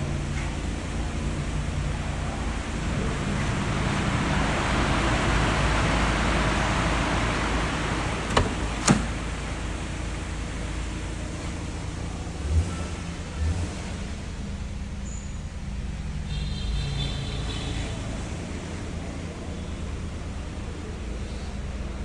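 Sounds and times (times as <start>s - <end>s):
car engine humming: 4.7s - 12.6s
sharp clicks: 8.3s - 9.3s.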